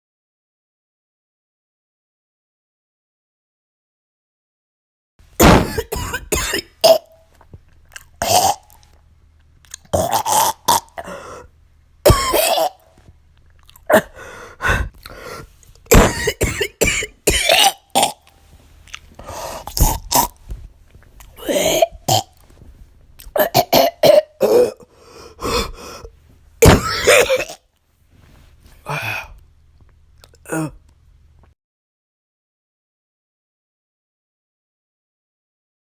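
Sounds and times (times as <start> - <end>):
girl coughing wetly: 5.4 - 7.1, 12.1 - 12.8, 13.9 - 14.9, 15.9 - 18.2, 21.4 - 22.3, 23.4 - 25.8, 26.6 - 27.6.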